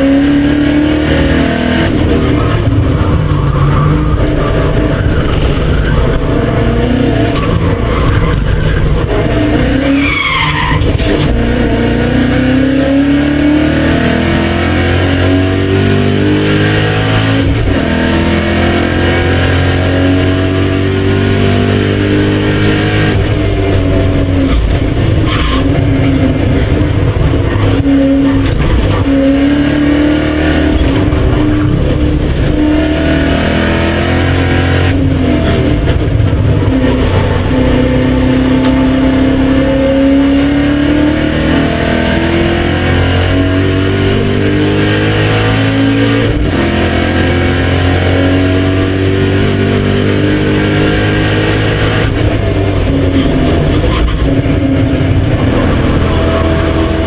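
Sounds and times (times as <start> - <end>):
car engine accelerating hard: 0.0 - 57.0
tyres squealing: 9.7 - 11.0.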